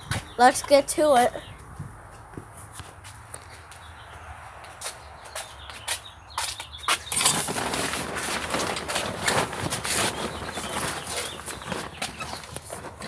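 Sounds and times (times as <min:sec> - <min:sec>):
dense crunching rustle: 0:07.0 - 0:13.0.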